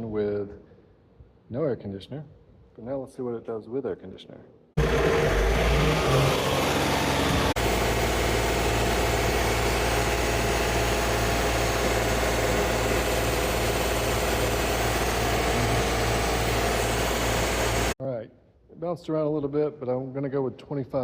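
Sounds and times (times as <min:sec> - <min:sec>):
tractor diesel engine running: 0:04.8 - 0:18.0.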